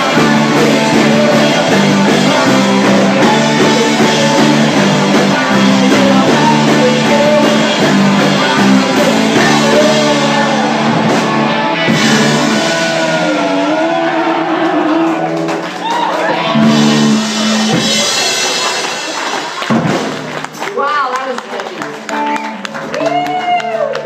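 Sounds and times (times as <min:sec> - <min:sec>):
person singing: 0:00.0 - 0:19.1
electric guitar: 0:00.0 - 0:20.7, 0:21.6 - 0:24.0
drums: 0:00.0 - 0:24.0.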